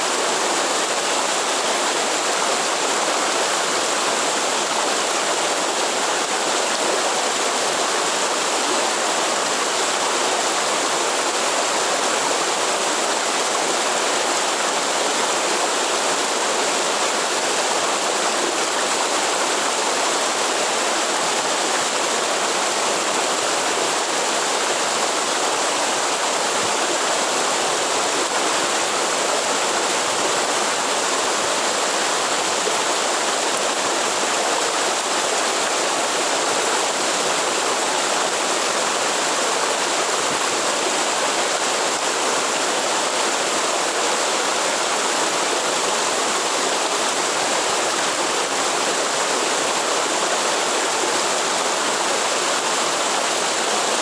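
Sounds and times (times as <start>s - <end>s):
waterfall rushing: 0.0s - 54.0s.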